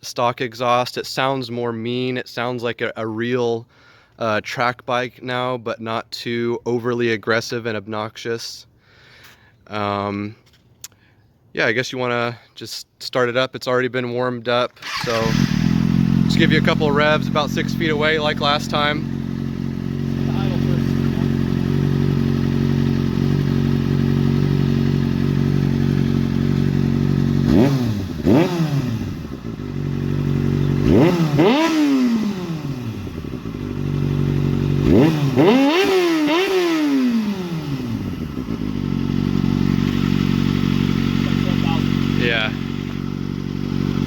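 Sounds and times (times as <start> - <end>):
motorcycle engine idling and revving: 14.8 - 44.0.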